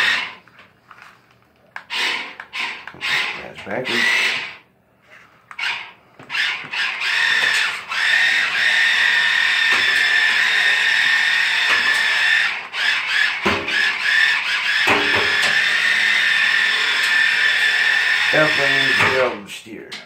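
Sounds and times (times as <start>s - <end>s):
small electric motor whining: 5.5s - 19.2s.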